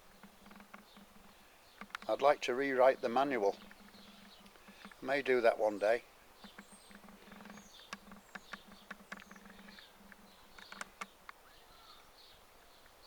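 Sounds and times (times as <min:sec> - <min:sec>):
light clicks: 0:06.4 - 0:11.4.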